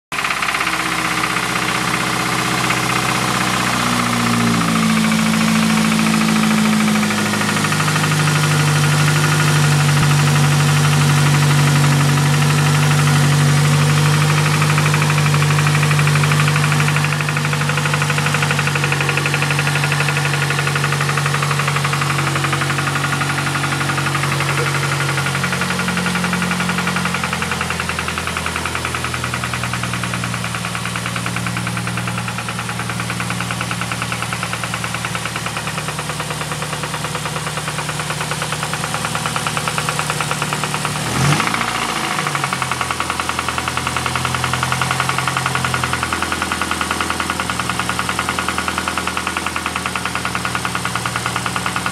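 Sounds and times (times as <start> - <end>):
car engine knocking: 0.1 - 51.9.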